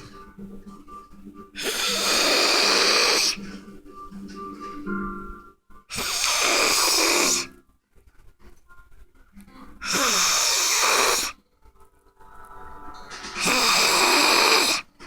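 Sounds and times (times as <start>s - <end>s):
man snoring heavily: 1.6s - 3.4s, 5.9s - 7.5s, 9.8s - 11.4s, 13.4s - 14.9s.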